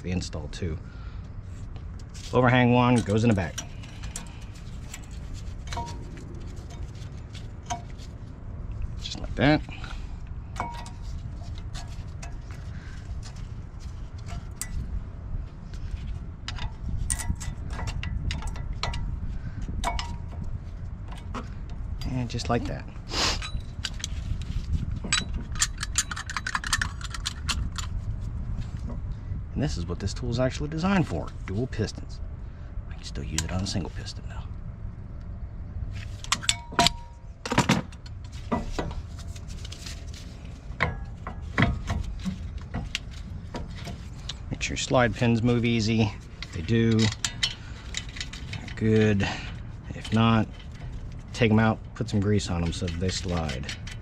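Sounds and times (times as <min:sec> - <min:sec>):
steady low rumble: 0:00.0 - 0:54.0
metal clicks of brake pads: 0:01.7 - 0:08.1, 0:23.4 - 0:28.0, 0:36.0 - 0:54.0.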